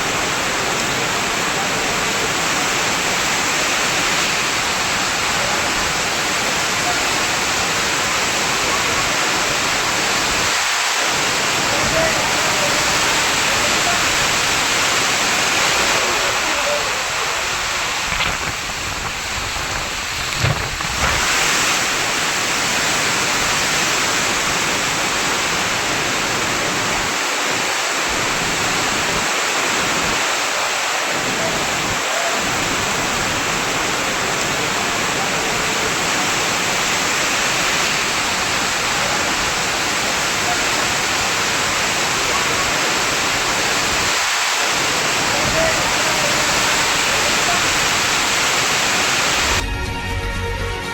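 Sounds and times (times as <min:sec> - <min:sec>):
heavy rain downpour: 0:00.0 - 0:49.6.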